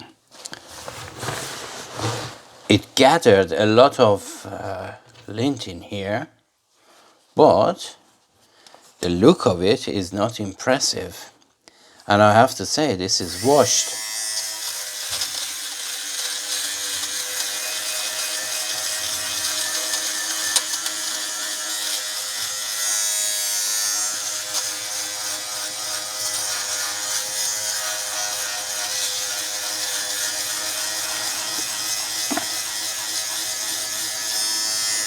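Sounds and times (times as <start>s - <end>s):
fabric shaver motor humming: 13.2s - 23.0s, 28.3s - 35.0s.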